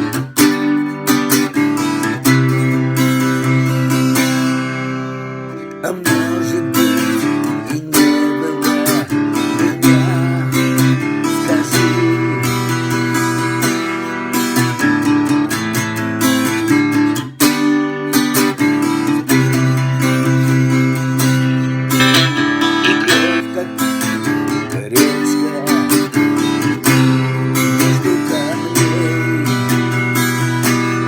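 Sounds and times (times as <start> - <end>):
acoustic guitar strumming chords: 22.0 - 24.1.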